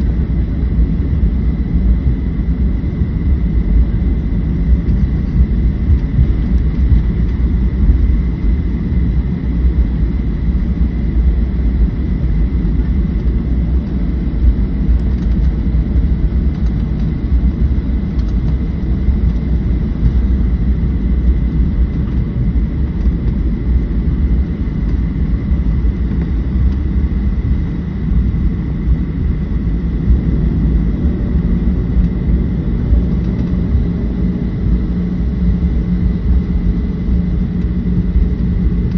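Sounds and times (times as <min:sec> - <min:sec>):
jet engine cabin rumble: 0:00.0 - 0:38.9.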